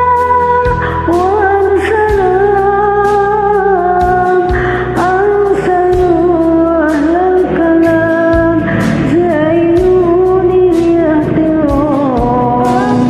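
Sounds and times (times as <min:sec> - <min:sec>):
person singing over backing track: 0:00.0 - 0:13.0.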